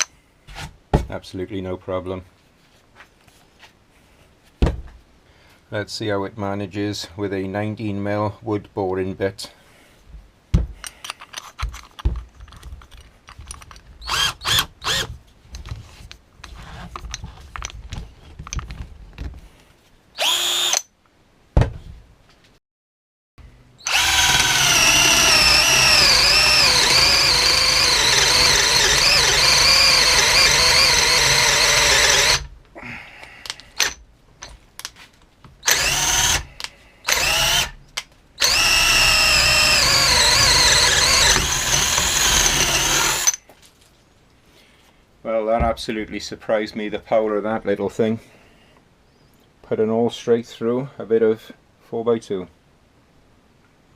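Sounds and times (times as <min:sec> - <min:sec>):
drill clicks: 0:11.0 - 0:15.1, 0:20.2 - 0:20.9, 0:23.8 - 0:32.5, 0:33.4 - 0:34.0, 0:35.6 - 0:43.4
cordless drill boring wood: 0:14.0 - 0:15.1, 0:20.2 - 0:20.8, 0:23.8 - 0:32.5, 0:35.6 - 0:37.8, 0:38.4 - 0:43.4.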